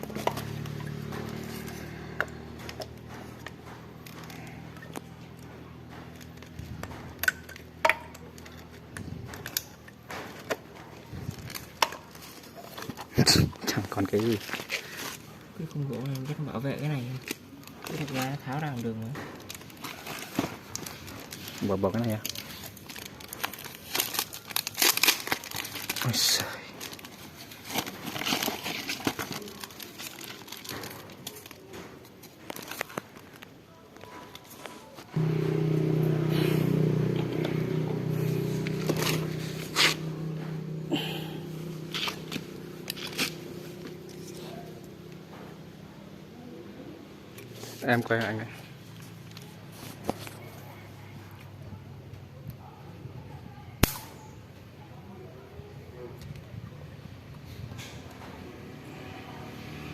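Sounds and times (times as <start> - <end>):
clicks and knocks of handled parts: 0.0 - 16.4
crinkling and rustling: 0.0 - 40.8, 41.6 - 45.9, 47.3 - 51.6
steady low hum: 35.1 - 46.4.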